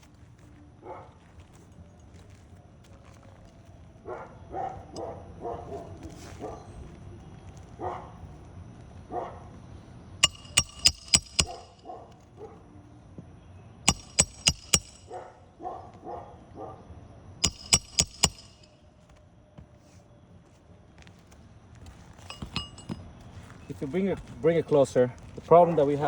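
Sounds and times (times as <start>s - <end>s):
dog barking: 0.8s - 1.3s, 4.0s - 6.8s, 7.8s - 8.2s, 9.1s - 9.5s, 11.4s - 12.6s, 15.1s - 16.9s
hammer blows with metallic ring: 10.2s - 11.8s, 13.9s - 15.2s, 17.4s - 18.8s, 22.2s - 23.0s.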